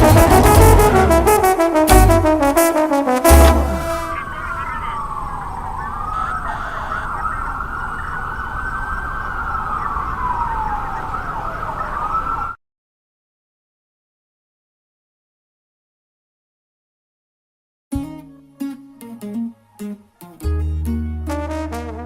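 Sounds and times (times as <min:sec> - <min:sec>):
brass chord: 0:00.0 - 0:04.2, 0:17.9 - 0:22.0
siren wailing: 0:03.2 - 0:12.6.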